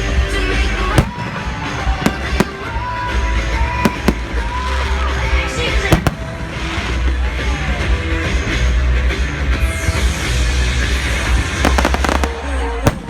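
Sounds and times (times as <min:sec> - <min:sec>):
fireworks bangs: 0:00.5 - 0:07.6, 0:11.3 - 0:13.0.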